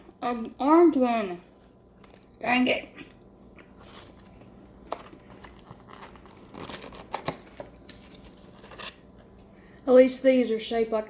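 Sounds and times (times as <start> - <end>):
paper packaging crinkling: 3.7 - 9.3.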